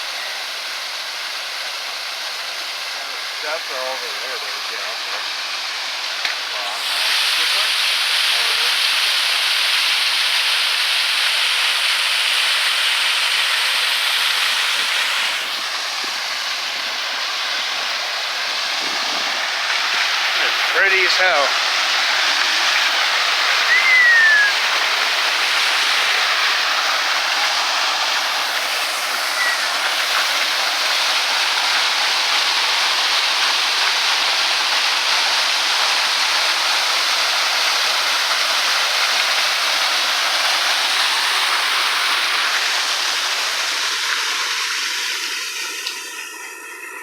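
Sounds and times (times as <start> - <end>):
waterfall roaring: 0.0 - 47.0
short falling whistle: 23.6 - 24.7, 29.3 - 29.8.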